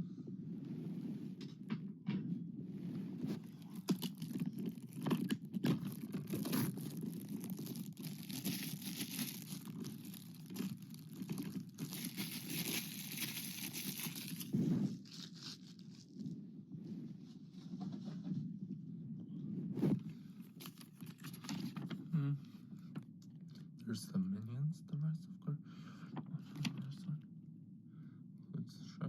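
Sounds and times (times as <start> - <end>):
plastic wrap crinkling and tearing: 3.4 - 16.2.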